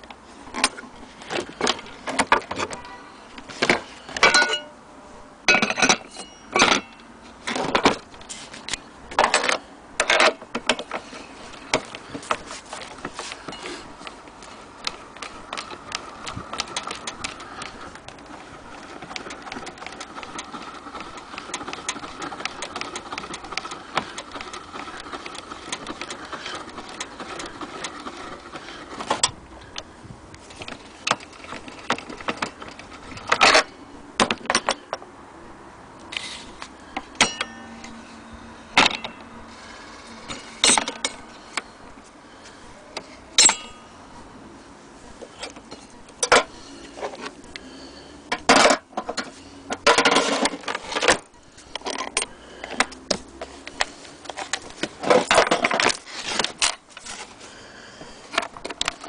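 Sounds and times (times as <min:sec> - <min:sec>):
gramophone mechanism clicking: 0:06.5 - 0:35.0.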